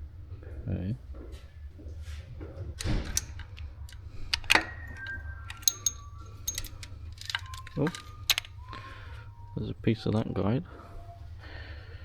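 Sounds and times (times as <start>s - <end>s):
steady low hum: 0.0s - 12.0s
metal tools clinking: 3.1s - 8.9s.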